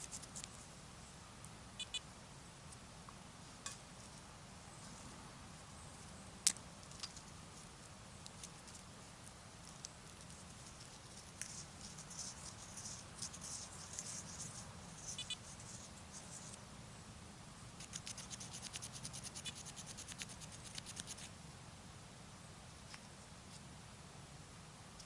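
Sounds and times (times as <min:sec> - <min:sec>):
dry ticks: 0:00.0 - 0:00.6, 0:06.4 - 0:15.5, 0:17.8 - 0:21.3
faint scratching and rubbing: 0:00.0 - 0:00.7, 0:09.6 - 0:16.6, 0:17.8 - 0:21.3.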